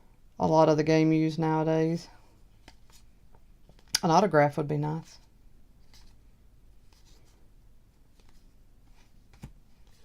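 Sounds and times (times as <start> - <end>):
paper cards rustling and sliding: 2.6 - 3.1, 5.1 - 6.2, 6.8 - 7.4, 8.0 - 10.0.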